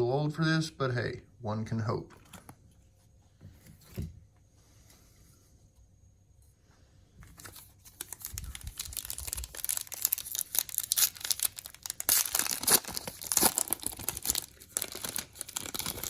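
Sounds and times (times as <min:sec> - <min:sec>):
card wrapper tearing and crinkling: 0:07.4 - 0:16.0.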